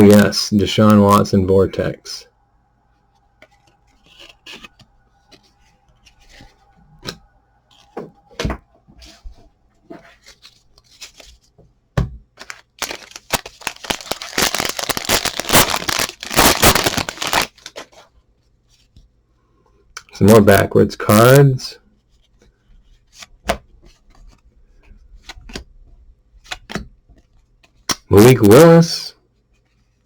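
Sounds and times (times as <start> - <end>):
wrapper crinkling and tearing: 12.4 - 18.0.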